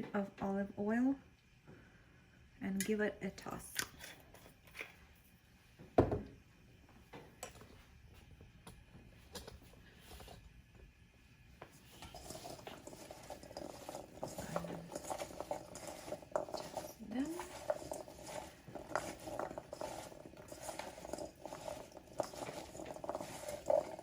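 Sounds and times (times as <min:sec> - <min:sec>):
carrots rattling in a bowl: 0:11.9 - 0:24.0.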